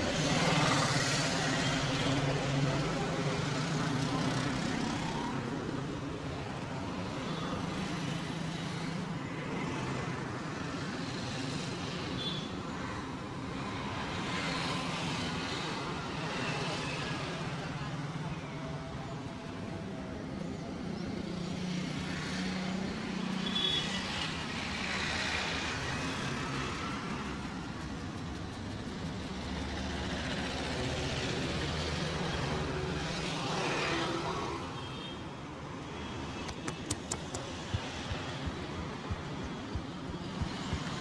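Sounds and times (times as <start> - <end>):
road traffic passing: 0.0 - 41.0
sharp clicks: 36.4 - 41.0.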